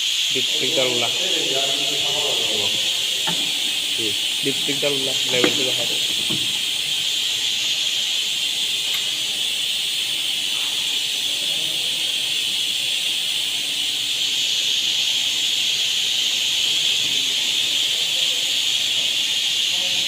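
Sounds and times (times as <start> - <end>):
steady high-pitched hiss: 0.0 - 20.0
faint voices: 0.3 - 7.6, 8.4 - 12.7, 17.1 - 20.0.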